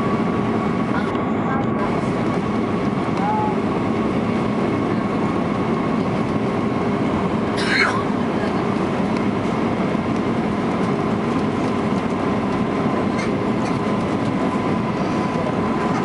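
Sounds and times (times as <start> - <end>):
airliner cabin engine roar: 0.0 - 16.0.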